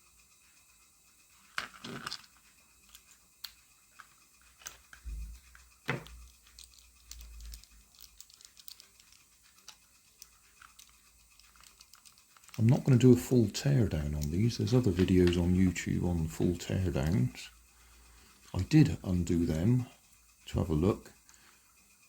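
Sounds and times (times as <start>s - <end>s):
plastic toy clicks and knocks: 1.5s - 12.9s.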